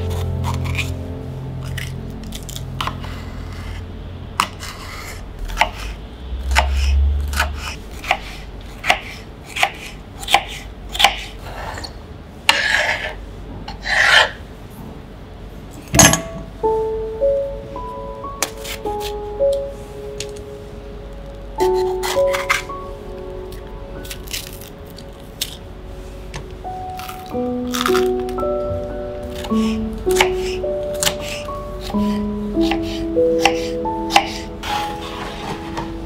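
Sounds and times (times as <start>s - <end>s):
soft background music: 0.0s - 7.6s, 16.0s - 36.0s
scraping on cutting board: 11.1s - 14.4s, 31.0s - 35.9s.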